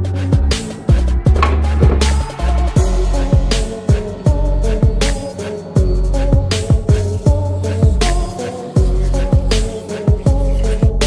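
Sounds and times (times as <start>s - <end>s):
background music: 0.0s - 11.0s
deep bass drum hits: 1.3s - 3.6s.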